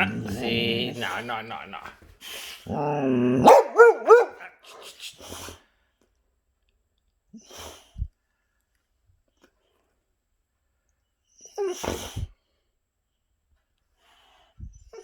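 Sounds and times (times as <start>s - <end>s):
dog barking: 3.4s - 4.5s.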